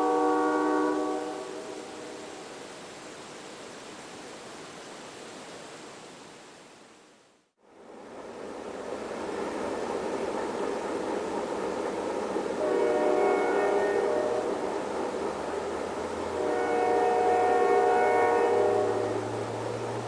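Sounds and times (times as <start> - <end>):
locomotive air horn chord: 0.0 - 2.1, 12.6 - 14.8, 16.2 - 19.8
rushing train noise: 0.0 - 2.9, 7.6 - 20.0.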